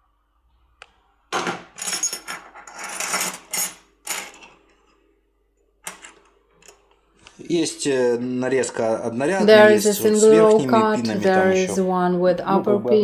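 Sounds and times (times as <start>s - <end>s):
small metal objects clinking: 1.4s - 4.5s.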